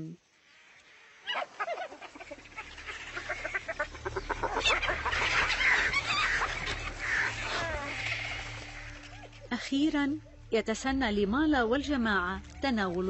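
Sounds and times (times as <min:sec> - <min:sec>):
hyenas giggling: 0:01.3 - 0:09.6.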